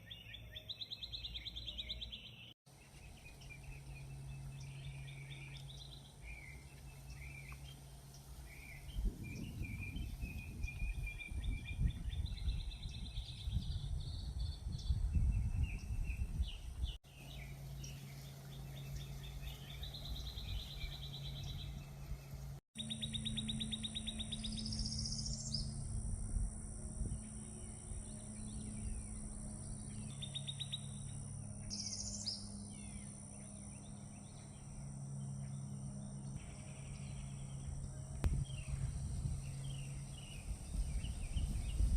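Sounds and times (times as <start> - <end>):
songbirds trilling and chirping: 0.0 - 41.9
steady low hum: 0.4 - 41.9.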